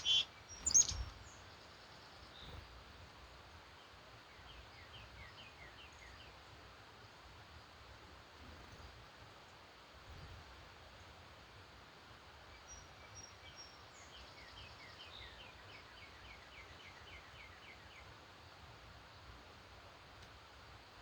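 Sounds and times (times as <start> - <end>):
songbird singing: 0.0 - 6.5, 12.5 - 18.2.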